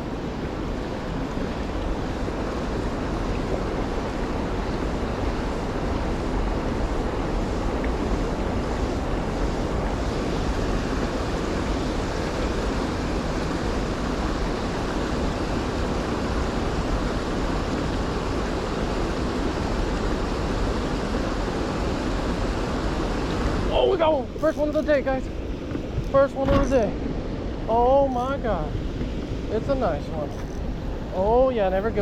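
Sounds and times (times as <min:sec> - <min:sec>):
fast-flowing river water rushing: 0:00.0 - 0:32.0
wind rumbling on microphone: 0:00.0 - 0:32.0.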